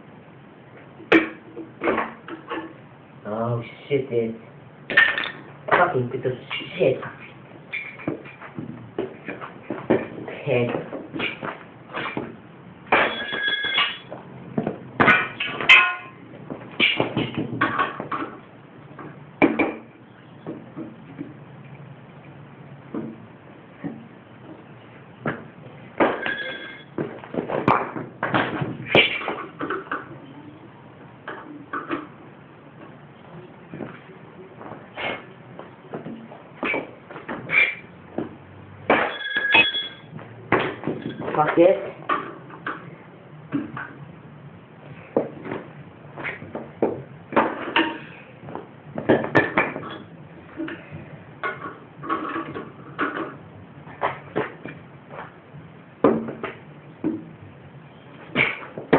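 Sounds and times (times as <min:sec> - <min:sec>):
knocks and clanks on metal: 0:10.8 - 0:18.4, 0:35.9 - 0:42.8, 0:46.4 - 0:50.1
metal tools clanking: 0:12.9 - 0:14.1, 0:26.1 - 0:27.0, 0:38.9 - 0:40.1.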